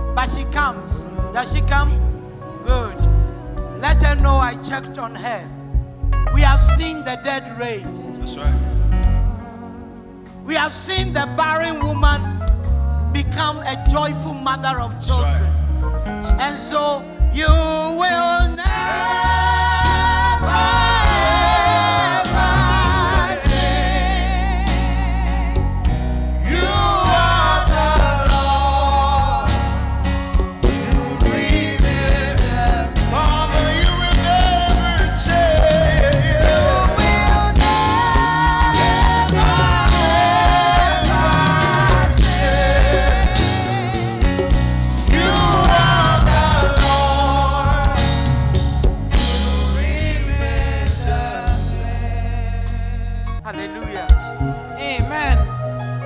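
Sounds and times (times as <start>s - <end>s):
gospel singing voices: 6.4s - 15.6s, 16.2s - 56.0s
drums and bass beat: 18.6s - 52.1s.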